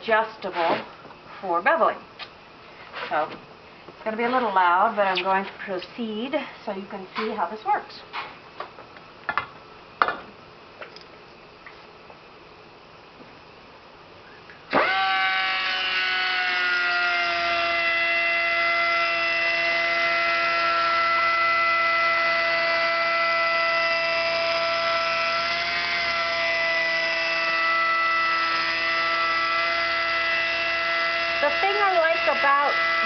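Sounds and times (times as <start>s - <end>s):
angle grinder whining: 14.7s - 33.0s.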